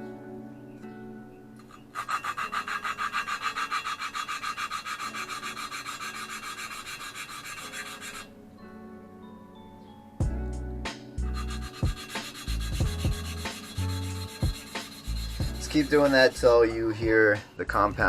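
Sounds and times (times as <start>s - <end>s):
instrumental background music: 0.0s - 18.0s
valve lapping gritty rasping: 1.7s - 8.3s, 11.3s - 16.8s.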